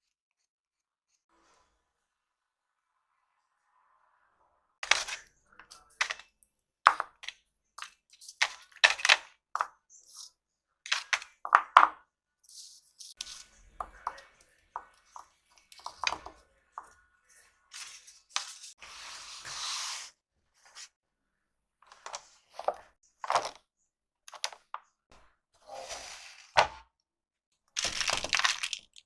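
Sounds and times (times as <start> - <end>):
pastel sticks and boxes handled: 4.8 - 10.3, 10.9 - 20.9, 21.8 - 23.6, 24.3 - 26.9, 27.8 - 29.0.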